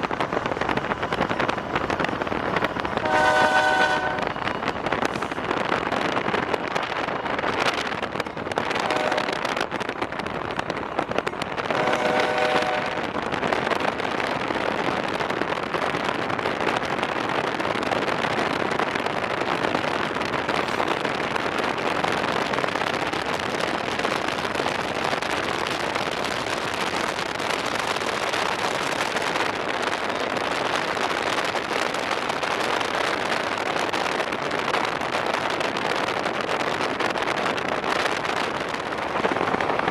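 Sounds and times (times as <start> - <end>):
loud steady rushing noise: 0.0 - 39.9
locomotive horn chord: 3.0 - 4.3, 8.8 - 9.3, 11.8 - 13.0.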